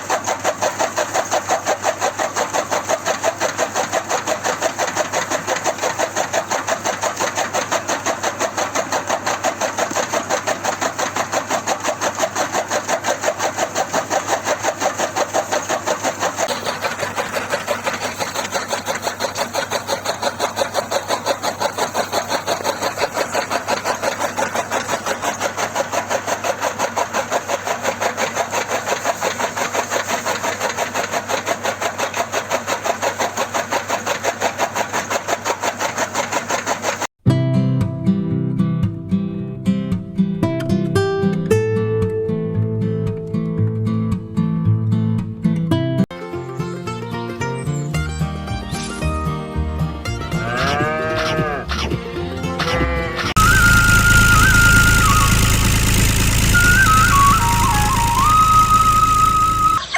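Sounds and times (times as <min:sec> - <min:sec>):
tractor engine chugging: 0:00.0 - 0:37.1, 0:53.4 - 0:59.9.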